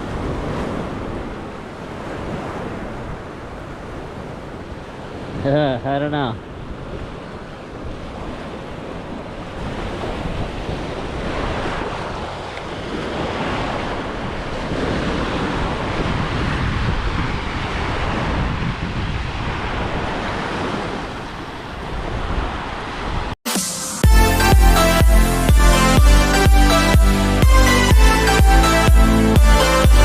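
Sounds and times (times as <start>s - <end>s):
wind buffeting microphone: 0.0s - 5.5s, 6.4s - 23.4s
surf washing onto beach: 0.0s - 23.4s.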